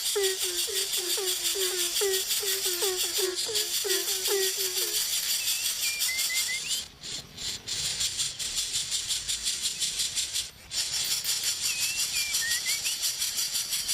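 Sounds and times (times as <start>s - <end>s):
bird chirping: 0.0s - 13.9s
cicadas buzzing: 0.0s - 13.9s.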